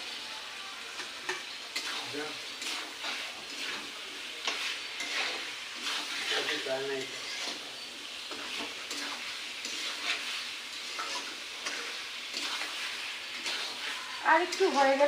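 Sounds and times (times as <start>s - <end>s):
curry sizzling in a pan: 0.0s - 15.0s
spatula scraping a pan: 1.0s - 15.0s.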